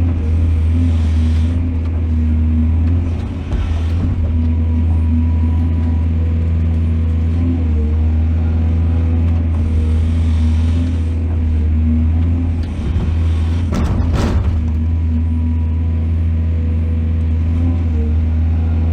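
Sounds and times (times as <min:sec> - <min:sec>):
diesel engine droning: 0:00.0 - 0:18.9
short clatter: 0:12.2 - 0:15.0.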